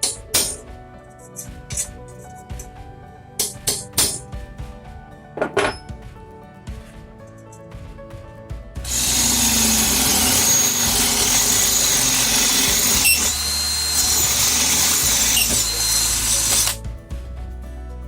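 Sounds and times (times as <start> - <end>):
background music: 0.0 - 18.0
cordless drill drilling: 8.9 - 16.8.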